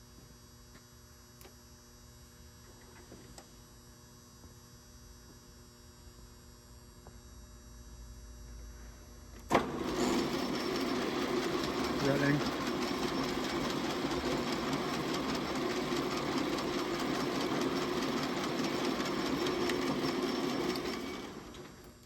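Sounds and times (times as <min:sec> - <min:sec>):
lathe running loudly: 0:09.6 - 0:21.8.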